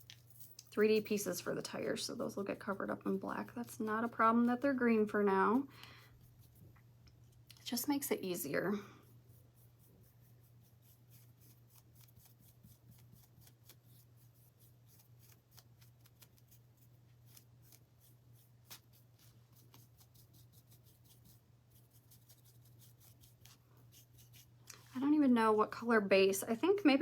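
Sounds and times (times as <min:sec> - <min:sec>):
low electrical hum: 0:00.0 - 0:27.0
paintbrush scratching on wood: 0:00.8 - 0:06.8, 0:09.0 - 0:24.6.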